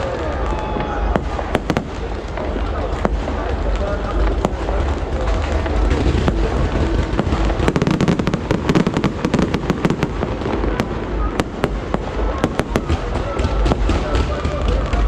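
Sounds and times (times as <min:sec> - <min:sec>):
low rumble: 0:00.0 - 0:14.0
fireworks cracking and crackling: 0:00.0 - 0:15.0.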